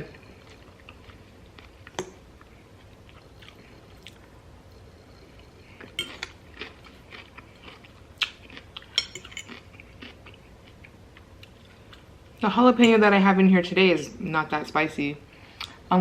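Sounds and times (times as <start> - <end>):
chewing and crunching lettuce: 2.7 - 12.1.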